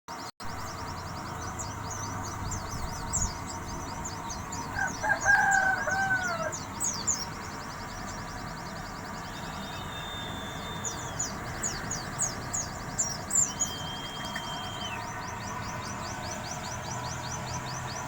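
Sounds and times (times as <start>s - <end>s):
bird twittering high chirps: 0.4s - 18.0s
rooster crowing: 4.5s - 6.9s.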